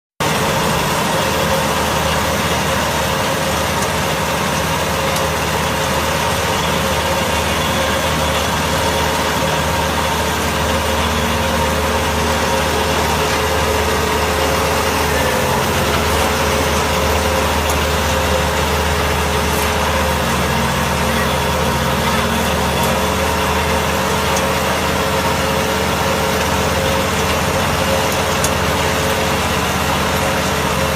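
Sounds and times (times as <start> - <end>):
tractor engine running: 0.2 - 30.9.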